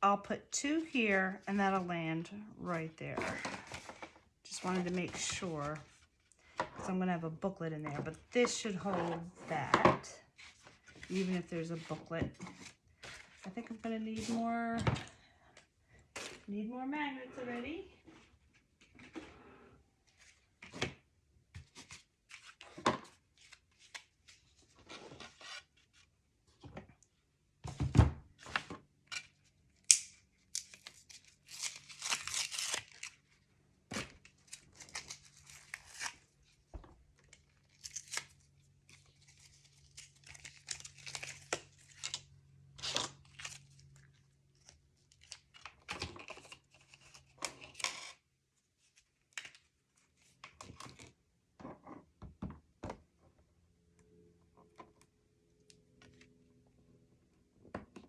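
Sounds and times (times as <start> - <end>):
paper tearing and rustling: 30.6 - 33.3, 34.0 - 36.4, 37.6 - 42.2.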